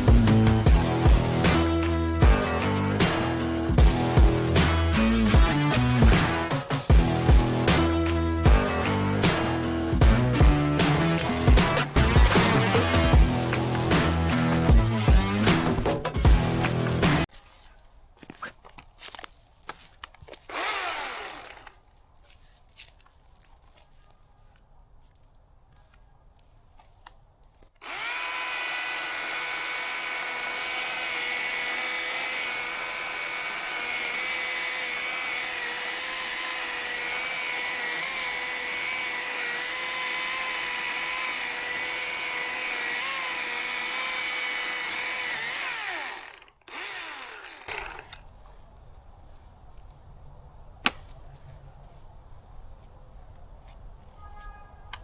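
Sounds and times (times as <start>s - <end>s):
chainsaw running: 0.0s - 17.2s, 20.5s - 21.8s, 27.8s - 48.2s.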